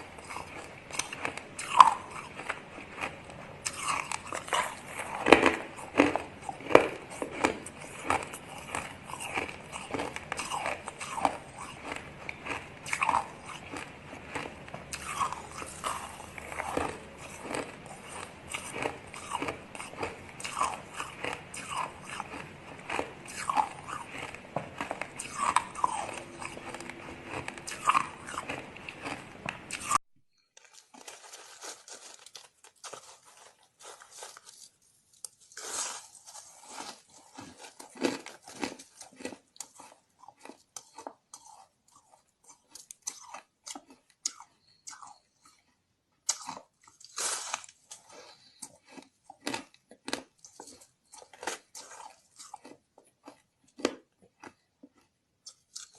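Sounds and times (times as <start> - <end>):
ice crunching between teeth: 0.0 - 30.0, 30.6 - 45.2, 46.3 - 55.9.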